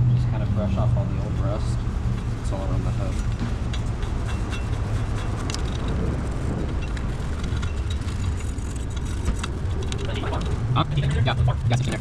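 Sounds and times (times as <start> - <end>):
low rumble: 0.0 - 12.0
wire brush scrubbing rust: 2.6 - 6.5.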